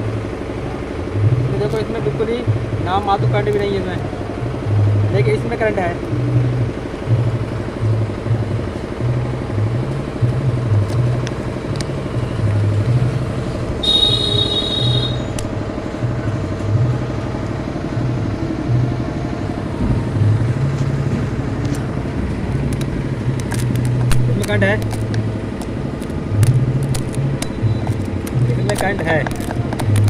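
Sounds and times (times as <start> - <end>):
machine pulsing hum: 0.0 - 28.5
brief high-pitched tone: 13.8 - 15.4.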